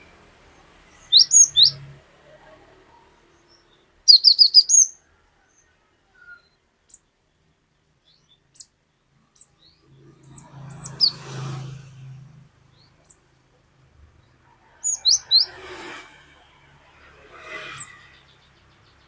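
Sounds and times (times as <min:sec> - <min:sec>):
bird singing sharp notes: 0:01.0 - 0:01.9, 0:03.5 - 0:05.0.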